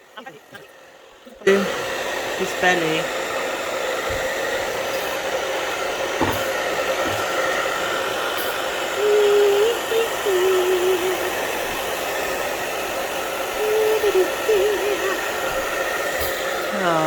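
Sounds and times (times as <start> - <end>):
hair dryer blowing: 0.0 - 17.0
puppy whining: 13.4 - 16.0.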